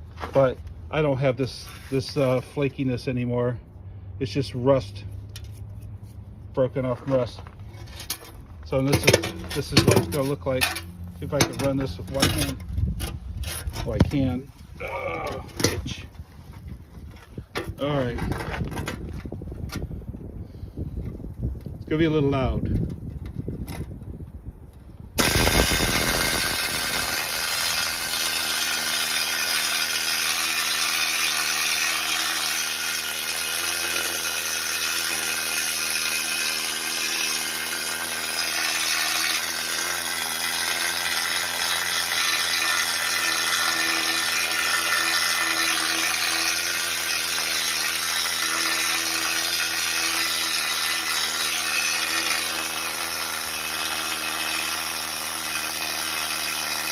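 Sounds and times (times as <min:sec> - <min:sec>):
pneumatic needle scaler hammering metal: 0:25.2 - 0:56.9.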